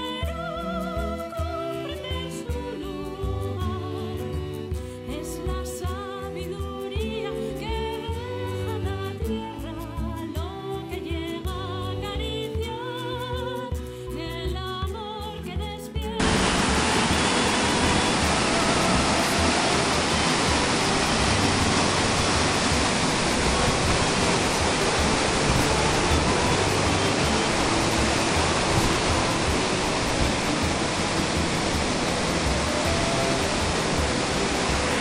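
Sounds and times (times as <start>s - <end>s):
waterfall rushing: 16.2s - 35.0s.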